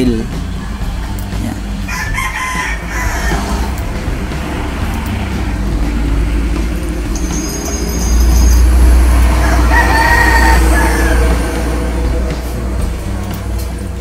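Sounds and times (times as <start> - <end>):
low steady rumble: 0.0 - 14.0
rooster crowing: 1.9 - 3.8, 9.0 - 12.0.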